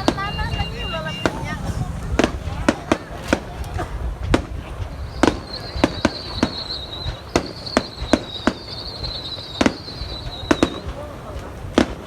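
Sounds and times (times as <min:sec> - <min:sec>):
fireworks bangs: 0:00.0 - 0:12.0
high steady whistling: 0:00.0 - 0:12.0.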